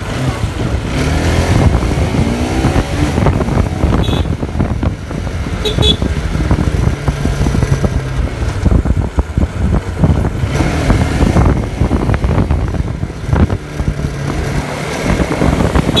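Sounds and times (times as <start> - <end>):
motorcycle engine running: 0.0 - 16.0
wind buffeting microphone: 0.0 - 16.0.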